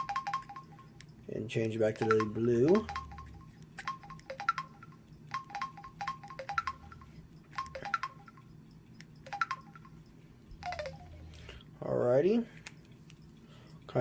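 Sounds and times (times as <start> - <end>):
phone key-press beeps: 2.0 - 11.2.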